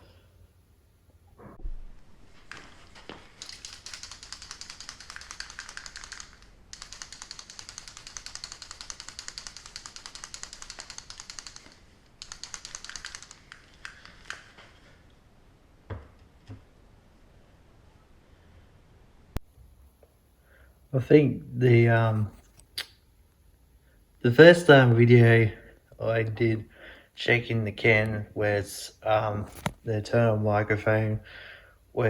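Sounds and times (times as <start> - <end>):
can rattling when shaken: 3.4 - 14.7.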